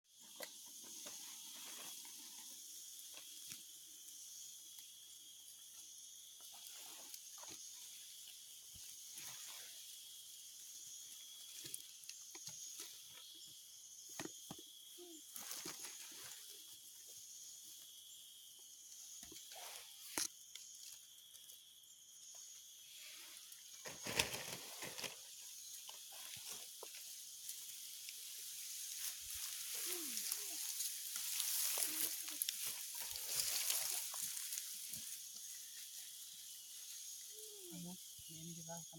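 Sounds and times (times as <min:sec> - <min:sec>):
insects buzzing: 0:00.1 - 0:38.9
rustling: 0:23.0 - 0:37.3.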